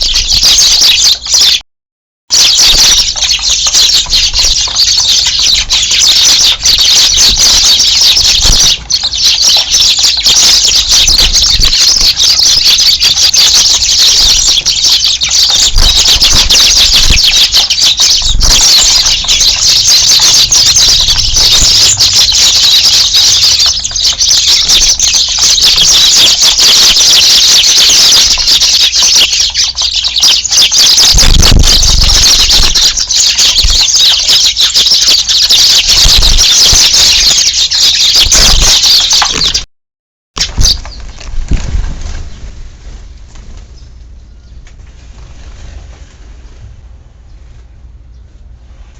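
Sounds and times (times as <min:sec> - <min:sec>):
flock of sparrows chirping: 0:00.0 - 0:01.6, 0:02.3 - 0:39.7, 0:40.4 - 0:46.6
low thumps: 0:31.2 - 0:33.0.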